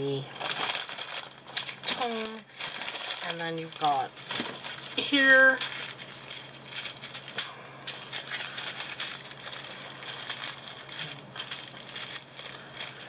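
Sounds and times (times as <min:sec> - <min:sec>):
plastic bags crinkling: 0:00.0 - 0:13.0.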